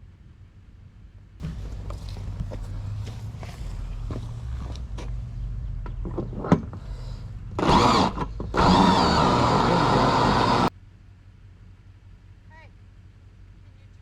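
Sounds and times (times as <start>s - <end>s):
small electric motor whirring: 7.6s - 10.7s.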